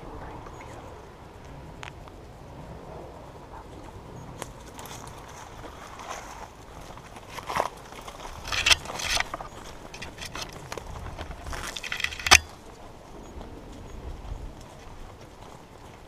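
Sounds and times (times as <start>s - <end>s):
rustling through brush: 3.6s - 16.0s
gear rattling: 7.3s - 12.6s
sharp click: 11.6s - 12.5s.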